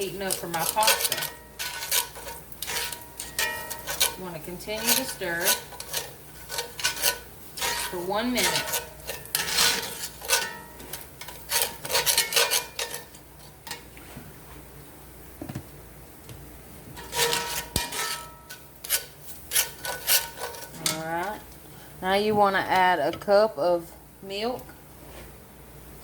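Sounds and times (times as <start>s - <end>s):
spoon scraping a cast iron pan: 0.0s - 13.9s, 17.0s - 21.5s.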